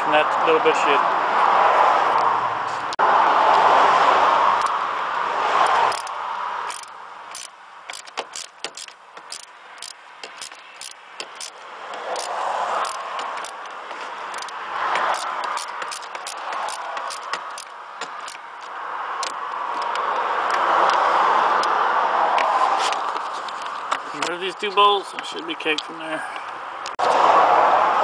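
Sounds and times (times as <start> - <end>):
hand tools clicking and rattling: 5.6 - 20.2, 22.9 - 26.5.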